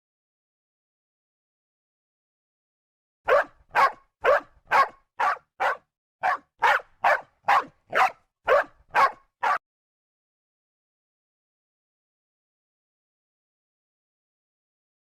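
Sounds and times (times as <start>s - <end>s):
dog barking: 3.3s - 9.6s.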